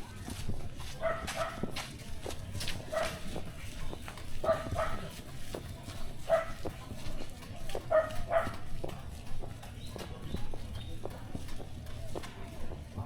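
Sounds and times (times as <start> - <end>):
dog barking: 1.0 - 1.7, 2.9 - 3.2, 4.4 - 5.1, 6.3 - 6.6, 7.9 - 8.7.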